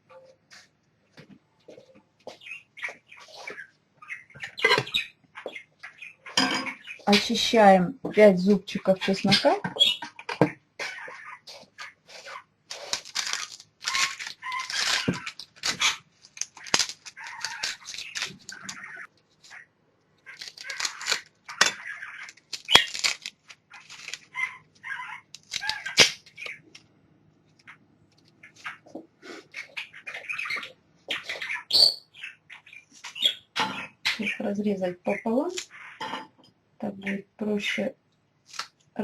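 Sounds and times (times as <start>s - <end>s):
garlic skins crackling: 11.5s - 19.6s, 20.2s - 26.8s, 38.4s - 39.0s.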